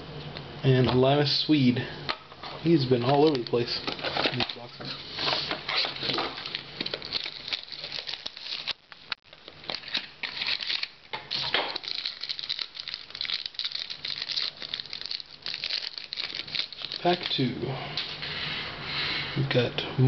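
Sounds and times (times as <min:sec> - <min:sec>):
foil wrapper crinkling: 0:03.2 - 0:17.5.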